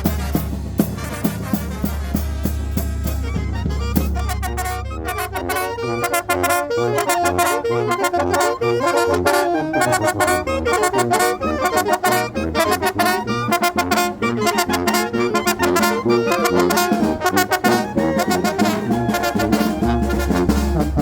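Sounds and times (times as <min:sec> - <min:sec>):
brass band playing: 0:00.0 - 0:21.0
percussion strokes: 0:00.0 - 0:21.0.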